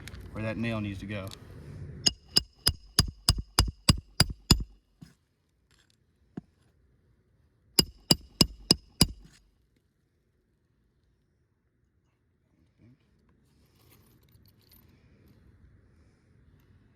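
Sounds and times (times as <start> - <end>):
hammer ringing on steel: 2.1 - 4.7, 7.8 - 9.4.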